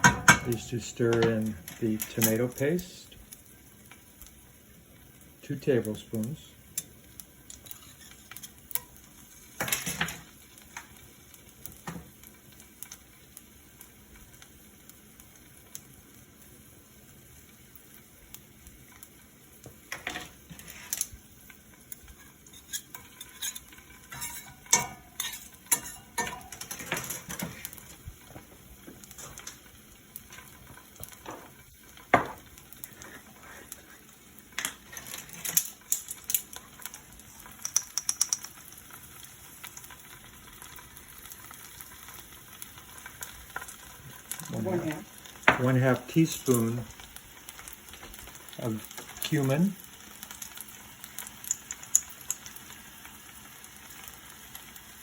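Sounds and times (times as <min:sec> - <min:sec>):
pan sizzling: 0:00.0 - 0:55.0
utensil scraping cast iron skillet: 0:07.5 - 0:10.3, 0:19.9 - 0:21.2, 0:22.0 - 0:28.4, 0:34.6 - 0:37.0.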